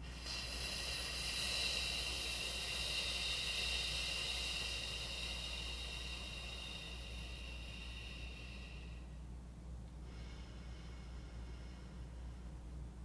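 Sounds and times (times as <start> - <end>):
person exhaling long hiss: 0.0 - 9.2.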